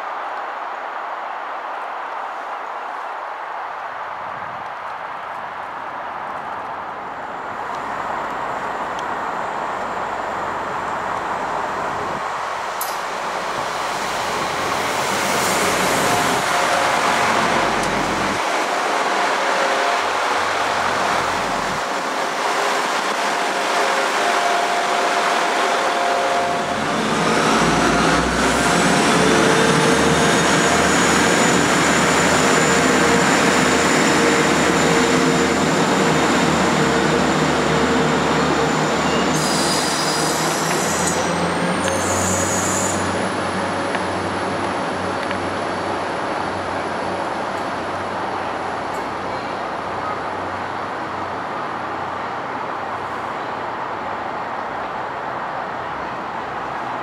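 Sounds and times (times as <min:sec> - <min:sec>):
train wheels rumbling on rail: 0:07.6 - 0:51.2
brief high squeals: 0:38.9 - 0:43.2.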